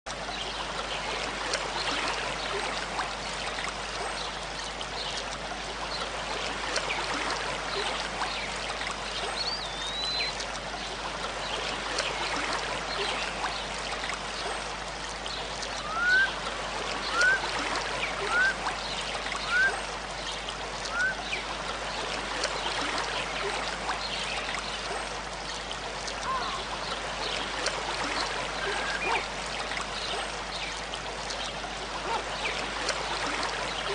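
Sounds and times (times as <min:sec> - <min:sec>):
bird calling: 0:15.8 - 0:16.4, 0:17.1 - 0:18.6, 0:19.4 - 0:19.8, 0:20.9 - 0:21.4
waterfall rushing: 0:15.8 - 0:18.6.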